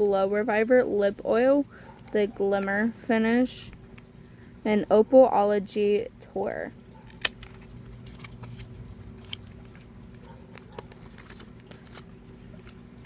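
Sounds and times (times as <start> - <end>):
steady low hum: 0.0 - 13.0
plastic packaging clicks and crackles: 7.0 - 13.0.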